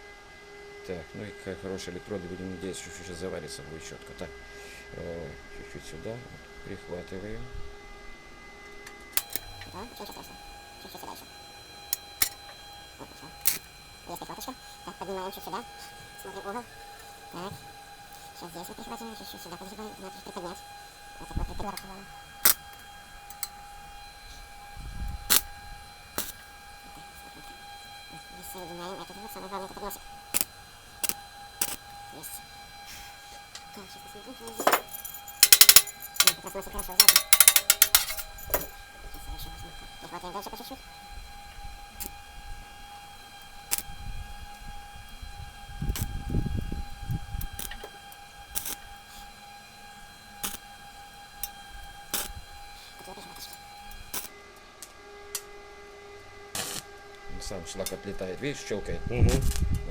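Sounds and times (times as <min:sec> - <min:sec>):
steady thin whine: 0:00.0 - 0:59.9
welding arc cracks: 0:09.2 - 0:54.3.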